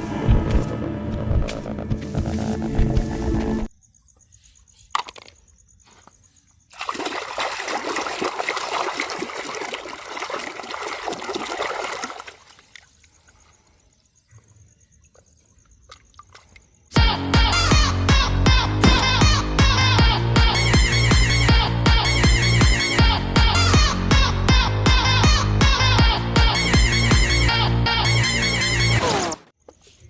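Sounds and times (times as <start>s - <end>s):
water running and splashing: 6.7s - 13.4s.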